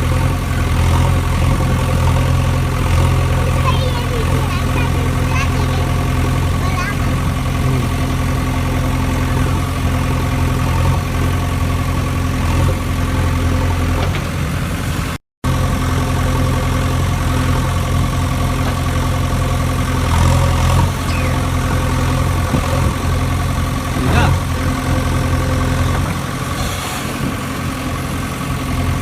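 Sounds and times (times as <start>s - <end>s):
engine idling: 0.0s - 29.0s.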